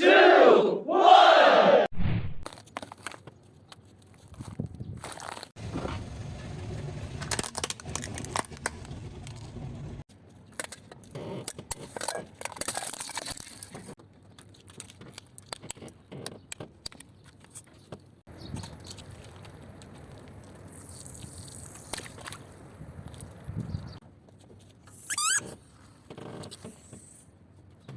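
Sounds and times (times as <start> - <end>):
tyre crushing objects crackling: 4.0 - 5.6
low car rumble: 5.6 - 10.1.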